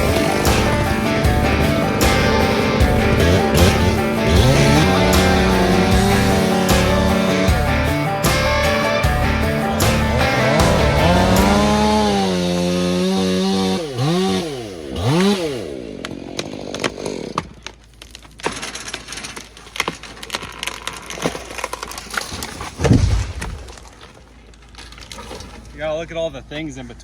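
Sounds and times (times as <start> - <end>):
chainsaw revving: 0.0 - 17.7
wood cracking and snapping: 9.7 - 25.8
tree hitting ground thud: 21.2 - 24.0.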